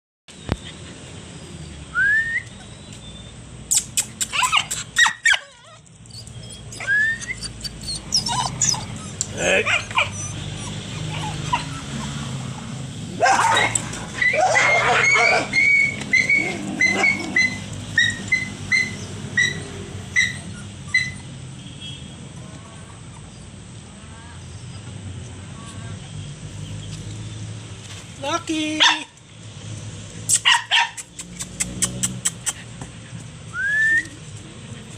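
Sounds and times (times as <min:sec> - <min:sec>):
puppy whining: 0:03.7 - 0:21.4, 0:22.8 - 0:23.5
puppy yelping: 0:03.7 - 0:21.5, 0:30.3 - 0:33.1.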